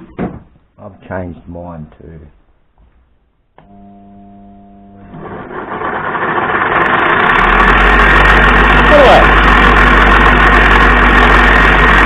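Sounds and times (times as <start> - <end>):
electric grinder motor spinning: 5.1 - 12.0.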